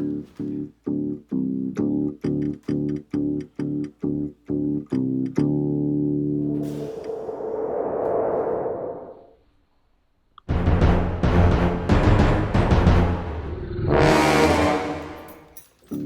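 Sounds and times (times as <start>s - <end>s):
low rumble: 6.2s - 9.4s.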